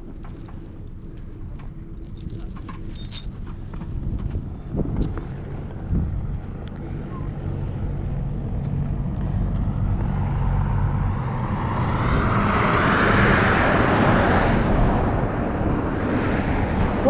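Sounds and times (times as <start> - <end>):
low engine hum: 0.0 - 17.0
vehicle driving past on slush: 9.0 - 15.6.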